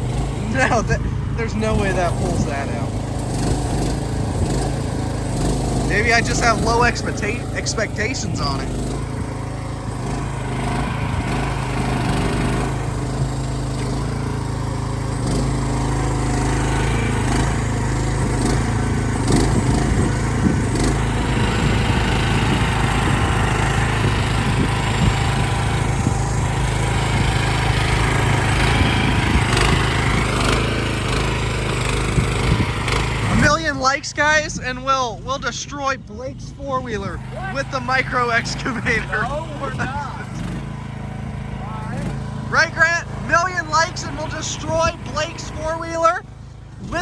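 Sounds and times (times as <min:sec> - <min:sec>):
mini excavator engine running: 0:00.0 - 0:47.0.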